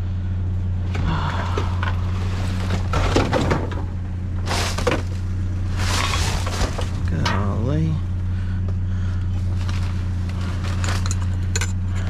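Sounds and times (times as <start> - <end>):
steady low hum: 0.0 - 12.0
junk scraping and clattering: 0.8 - 12.0.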